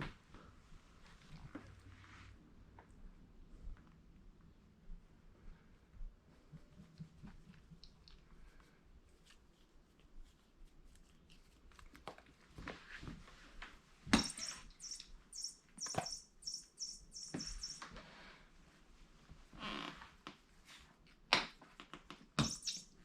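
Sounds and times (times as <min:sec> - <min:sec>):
toy bird chirping: 0:14.2 - 0:17.8, 0:22.4 - 0:23.0
cat batting at toy: 0:22.4 - 0:23.0.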